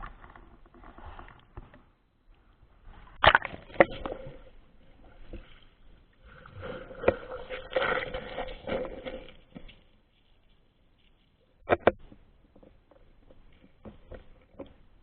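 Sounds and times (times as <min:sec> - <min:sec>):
water splashing and sloshing: 0:02.9 - 0:10.3.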